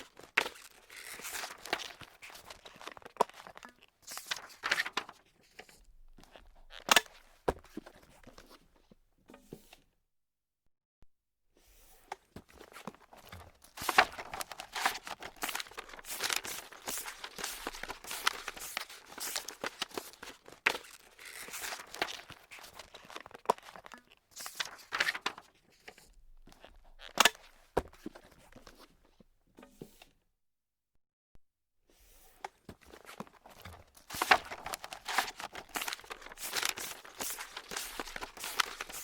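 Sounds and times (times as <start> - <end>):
paper crumpling and crackling: 0.0 - 6.4, 12.6 - 26.0, 32.7 - 39.0.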